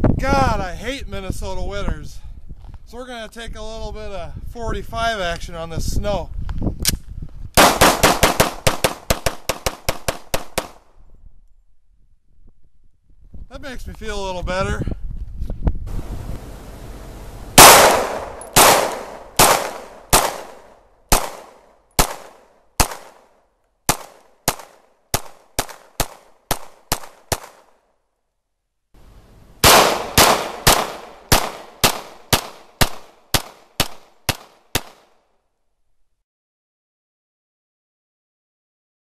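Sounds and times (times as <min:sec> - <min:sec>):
pistol shots echoing: 0:07.6 - 0:10.8, 0:17.6 - 0:23.3, 0:23.9 - 0:27.7, 0:29.6 - 0:35.1.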